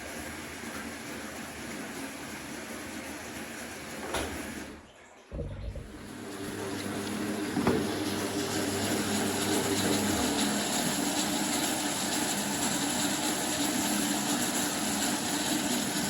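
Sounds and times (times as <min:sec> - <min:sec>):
washing machine motor whirring: 0:00.0 - 0:16.0
low hum: 0:05.3 - 0:06.1.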